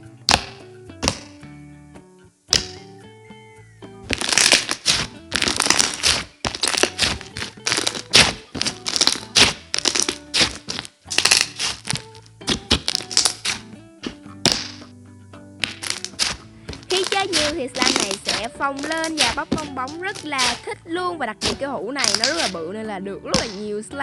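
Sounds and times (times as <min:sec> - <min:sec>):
background music: 0:00.0 - 0:24.0
slime squishing and popping: 0:00.3 - 0:01.3, 0:02.5 - 0:02.8, 0:04.1 - 0:14.9, 0:15.6 - 0:20.7, 0:21.4 - 0:22.6, 0:23.3 - 0:23.6.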